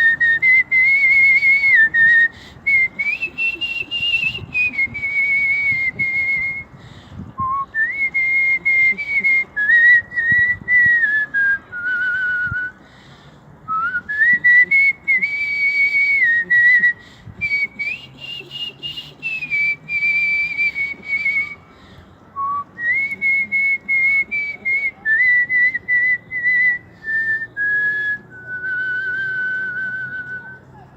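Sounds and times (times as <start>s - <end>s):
man whistling a tune: 0.0s - 6.7s, 7.4s - 12.7s, 13.7s - 21.6s, 22.4s - 30.7s.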